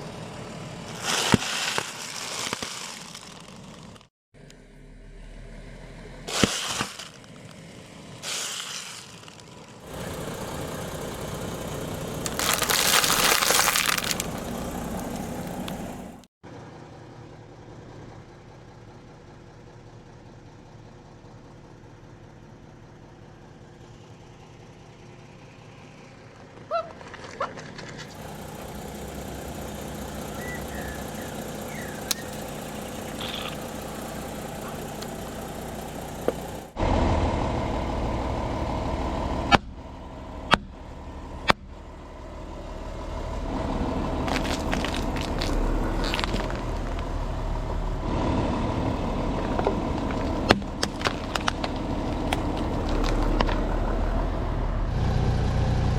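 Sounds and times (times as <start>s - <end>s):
car engine idling: 0.0s - 1.0s, 9.0s - 26.7s, 27.8s - 55.9s
objects cracking under tyres: 0.9s - 4.1s, 6.3s - 16.3s, 26.9s - 36.6s, 43.1s - 48.0s, 48.8s - 54.0s.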